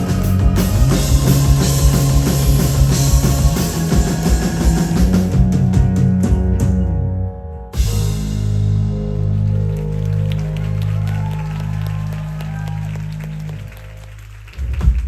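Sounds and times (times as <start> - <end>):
quick run of drum hits: 0.0 - 6.8
live rock band playing: 0.0 - 12.2
cymbal crashes: 7.8 - 9.3.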